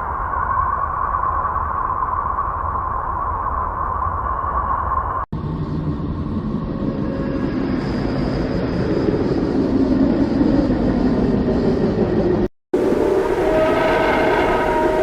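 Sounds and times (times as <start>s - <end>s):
dense rough rumble: 5.4s - 12.9s.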